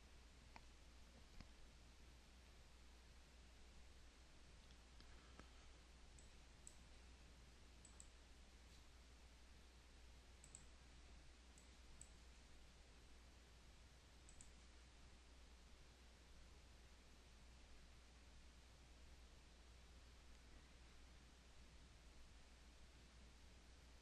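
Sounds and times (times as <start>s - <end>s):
faint low hum: 0.0s - 24.0s
computer mouse clicks: 6.2s - 6.9s, 7.8s - 8.2s, 10.4s - 10.7s, 11.5s - 12.2s, 14.2s - 14.6s.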